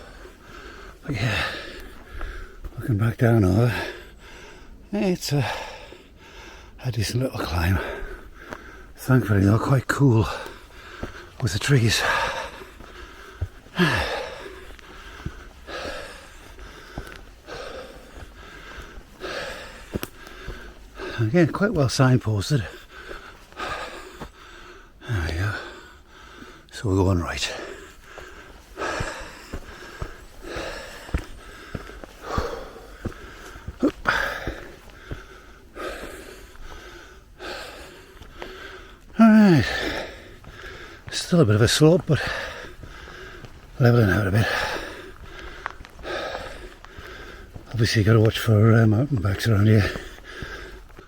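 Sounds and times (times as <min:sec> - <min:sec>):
man breathing hard: 0:00.0 - 0:02.8, 0:03.6 - 0:06.8, 0:07.4 - 0:09.1, 0:10.1 - 0:48.2, 0:49.1 - 0:51.0
soft footfalls: 0:09.9 - 0:24.5, 0:27.3 - 0:51.0.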